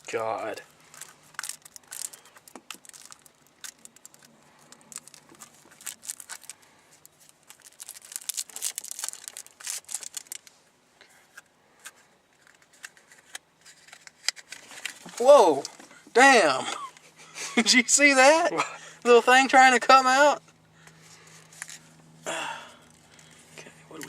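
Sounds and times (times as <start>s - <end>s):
paper package crinkling and tearing: 0.0s - 10.6s.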